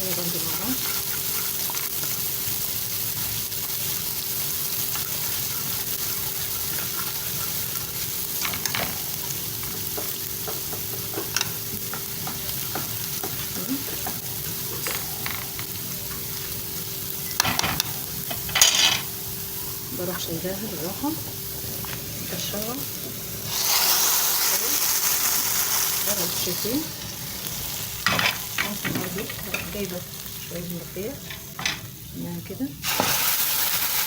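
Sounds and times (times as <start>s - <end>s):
garlic sizzling in a pan: 0.0s - 34.0s
spoon scraping a pan: 0.4s - 2.4s.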